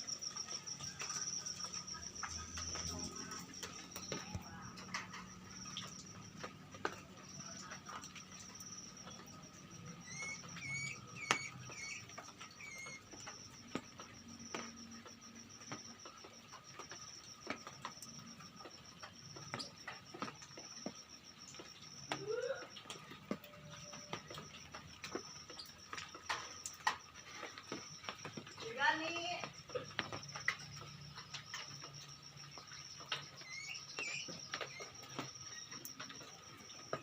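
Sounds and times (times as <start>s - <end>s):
high pulsing insect-like trill: 0.0s - 37.0s
birds chirping: 10.0s - 13.1s.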